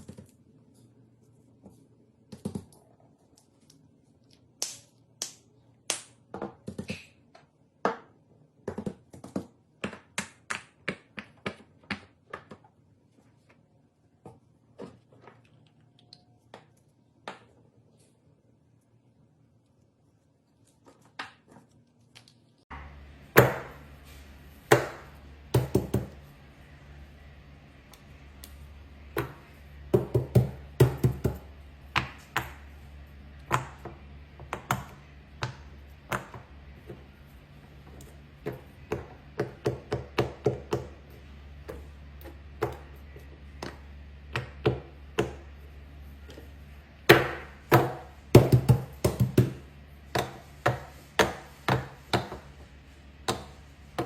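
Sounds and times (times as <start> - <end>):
steady low hum: 21.8 - 54.0.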